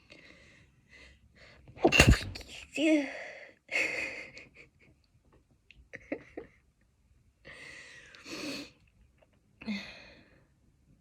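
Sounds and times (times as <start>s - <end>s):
woman breathing noisily: 7.4s - 8.8s.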